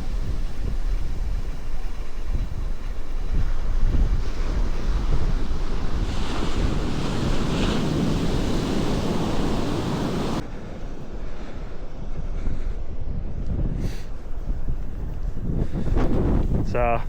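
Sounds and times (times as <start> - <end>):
surf breaking on beach: 0.0 - 12.3
wind buffeting microphone: 0.0 - 17.0.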